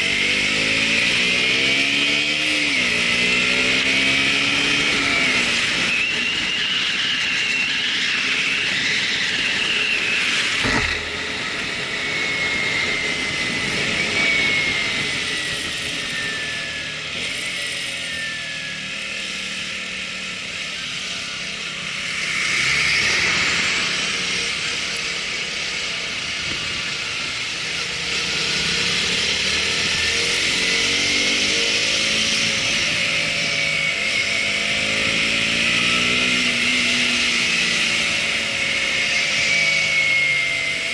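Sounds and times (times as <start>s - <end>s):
thin whine sliding in pitch: 0.0s - 40.9s
harsh rushing noise: 4.5s - 18.3s.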